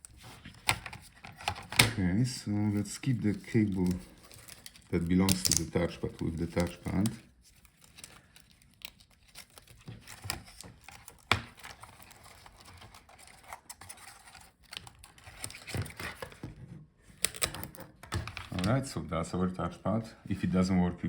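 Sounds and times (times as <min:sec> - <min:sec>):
plastic rustling: 0:00.0 - 0:16.5.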